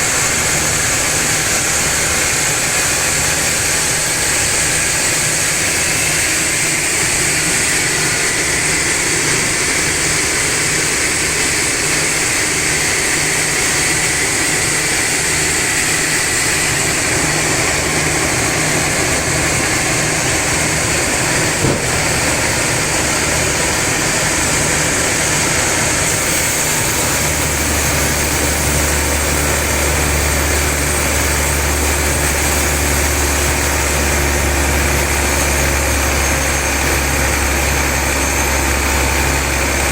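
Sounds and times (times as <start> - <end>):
sawmill machinery sawing log: 0.0 - 39.9
deep strong hum: 16.8 - 32.2
short knock: 21.5 - 22.4.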